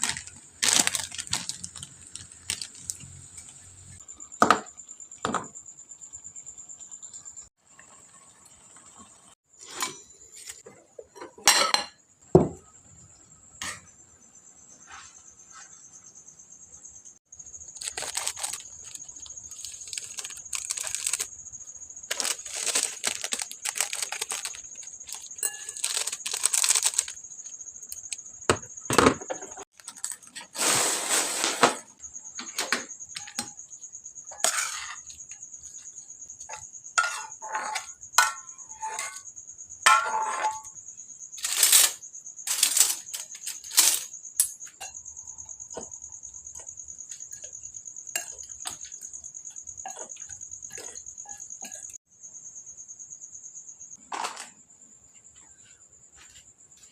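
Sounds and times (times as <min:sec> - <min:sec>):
cricket chirring: 0:00.0 - 0:56.9
dishes and utensils clattering: 0:09.6 - 0:12.0, 0:36.5 - 0:39.3, 0:39.9 - 0:40.7.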